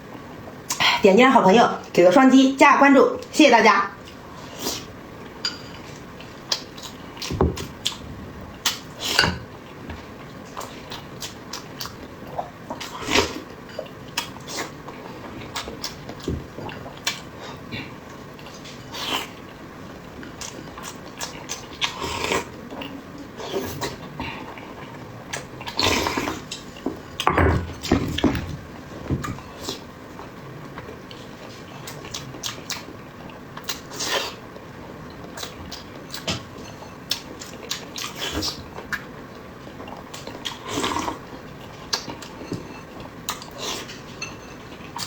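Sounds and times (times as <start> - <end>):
utensils clinking on dishes: 43.8 - 44.8.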